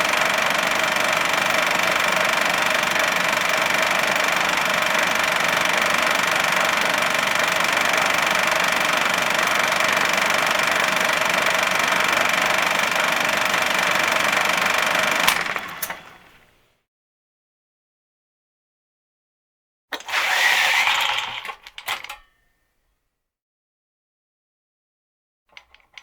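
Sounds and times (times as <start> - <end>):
projector whirring: 0.0 - 16.5.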